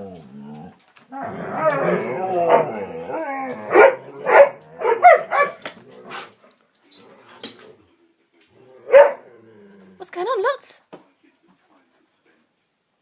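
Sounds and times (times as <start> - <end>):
dogs barking and yelping: 0.0 - 6.4, 8.8 - 9.6.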